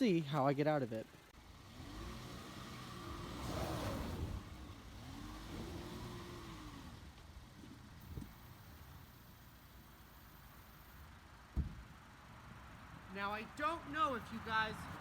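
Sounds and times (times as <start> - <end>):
car engine revving: 1.5 - 7.0
wheel spinning on snow: 1.7 - 7.1.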